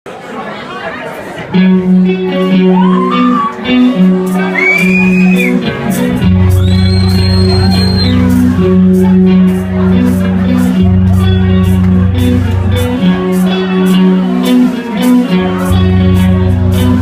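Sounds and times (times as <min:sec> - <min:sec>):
guitar music with sliding notes: 0:01.5 - 0:17.0
heavy bass line: 0:03.8 - 0:17.0.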